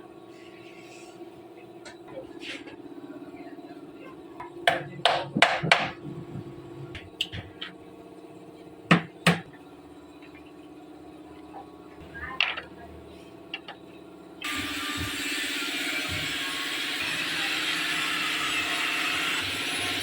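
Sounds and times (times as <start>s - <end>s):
steady low hum: 0.0s - 15.2s.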